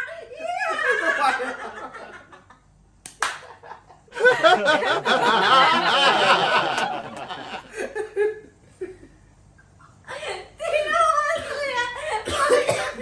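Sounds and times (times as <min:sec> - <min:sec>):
people laughing: 0:04.2 - 0:08.1.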